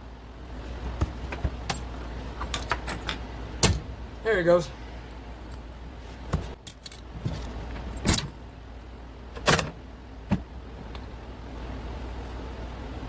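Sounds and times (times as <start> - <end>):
steady low hum: 0.0 - 13.0
metal tools clinking: 1.6 - 3.3.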